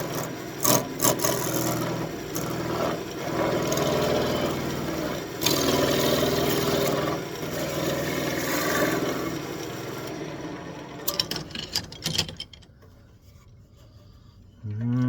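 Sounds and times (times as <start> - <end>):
wood lathe turning tool scraping: 0.0 - 15.0
sharp clicks and knocks: 11.0 - 13.0.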